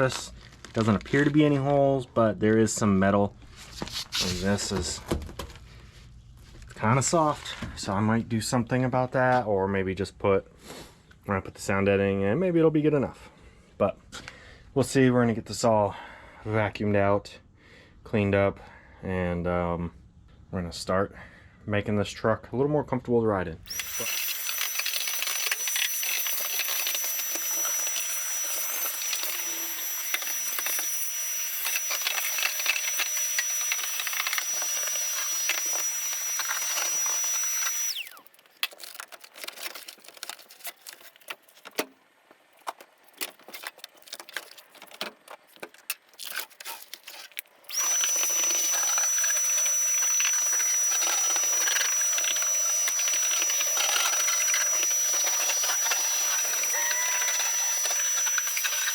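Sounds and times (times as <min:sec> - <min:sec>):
shop vacuum running: 0:23.7 - 0:38.3, 0:47.7 - 0:58.9
scrapes and clicks: 0:31.6 - 0:42.0, 0:42.6 - 0:58.9.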